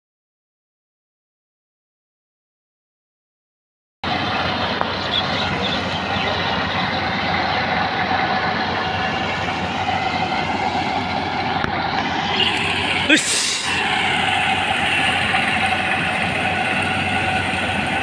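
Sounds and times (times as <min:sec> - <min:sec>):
combine harvester running: 0:04.0 - 0:18.0.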